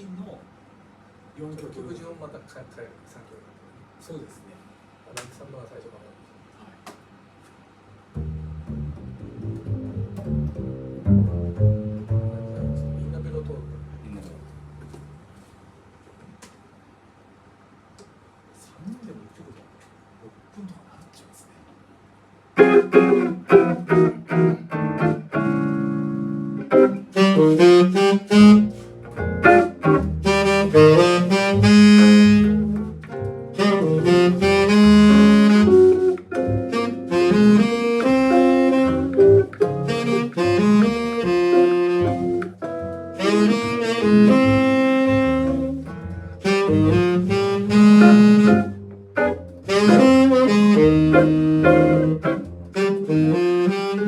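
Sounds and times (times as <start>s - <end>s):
bass line: 8.2s - 15.3s, 27.2s - 54.0s
saxophone melody: 22.6s - 25.6s, 26.6s - 54.0s.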